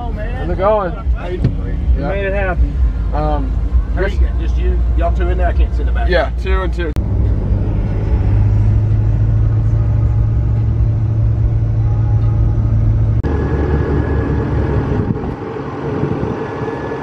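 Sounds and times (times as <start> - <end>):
car engine and road noise: 0.0 - 17.0
vehicle hum: 0.0 - 17.0.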